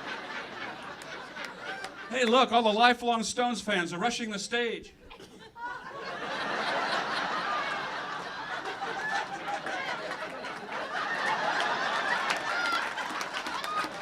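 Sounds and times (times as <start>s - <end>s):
audience laughing: 0.0s - 2.5s, 5.1s - 14.0s.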